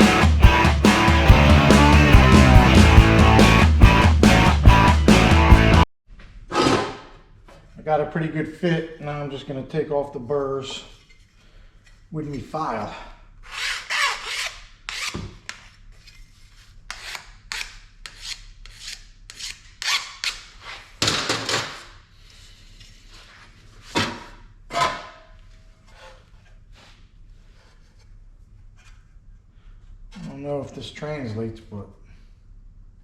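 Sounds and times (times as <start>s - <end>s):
file rasping on metal sheet: 13.4s - 15.6s, 16.9s - 20.9s.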